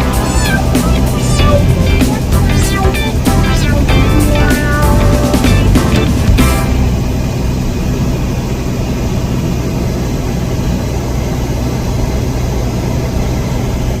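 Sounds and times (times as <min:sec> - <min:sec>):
background music: 0:00.0 - 0:07.1
car engine and road noise: 0:00.0 - 0:14.0.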